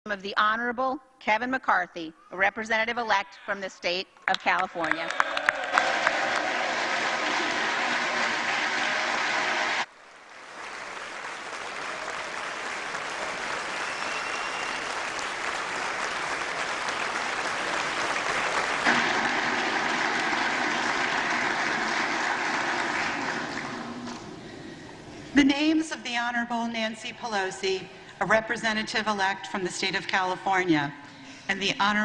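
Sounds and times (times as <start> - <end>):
crowd applauding: 4.8 - 25.0.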